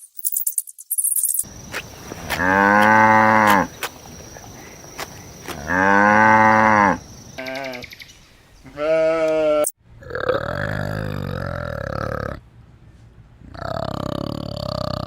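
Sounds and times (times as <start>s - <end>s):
long level animal calls: 1.7s - 8.0s.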